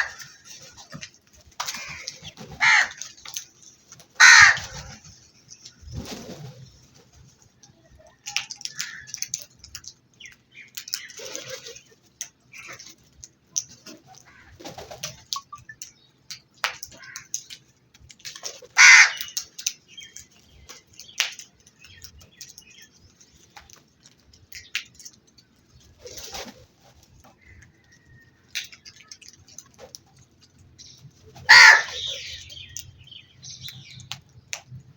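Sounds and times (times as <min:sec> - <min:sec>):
crows calling: 0:00.0 - 0:00.4, 0:01.7 - 0:03.2, 0:04.2 - 0:05.0, 0:08.7 - 0:09.2, 0:16.9 - 0:17.4, 0:18.8 - 0:19.4, 0:31.4 - 0:32.7.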